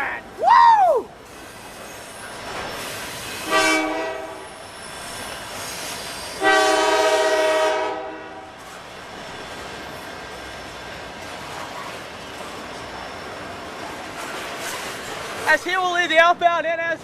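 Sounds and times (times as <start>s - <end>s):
train rolling past: 0.0s - 17.0s
locomotive air horn chord: 3.4s - 4.5s, 6.4s - 8.5s.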